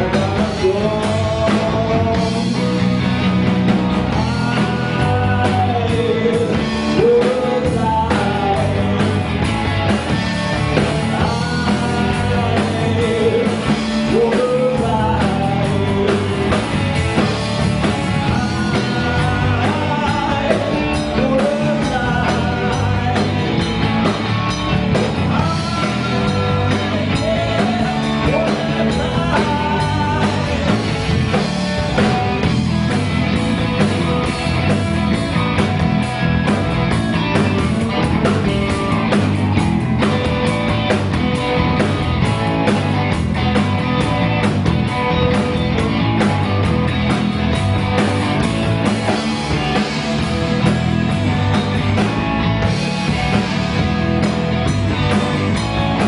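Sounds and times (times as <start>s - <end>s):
live blues band playing: 0.0s - 56.0s.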